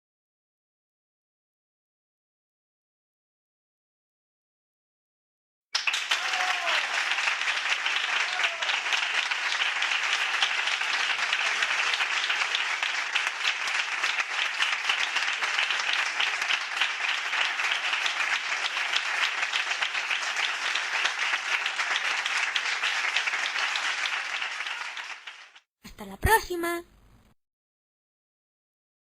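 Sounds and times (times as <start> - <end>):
whoops: 5.8 - 9.1
crowd applauding: 5.8 - 25.7.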